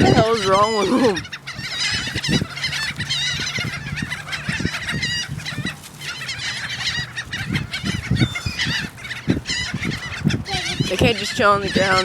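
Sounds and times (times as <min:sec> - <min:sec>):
flock of birds squawking: 0:00.0 - 0:12.0.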